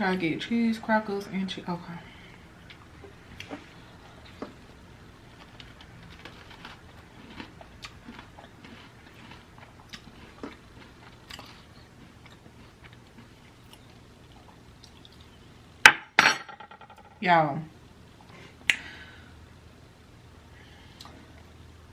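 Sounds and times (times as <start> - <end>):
person chewing food: 2.6 - 15.4.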